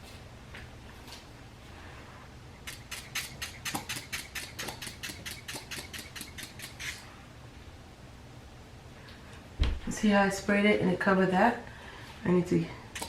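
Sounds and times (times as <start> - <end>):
spray bottle hissing spritzes: 2.6 - 7.0.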